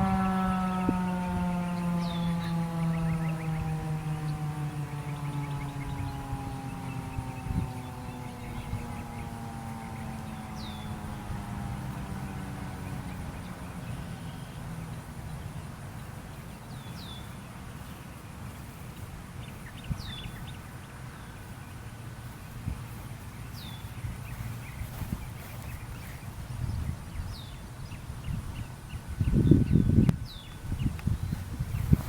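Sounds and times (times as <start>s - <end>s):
siren winding down: 0.0s - 15.8s
steady low rumble: 0.0s - 32.0s.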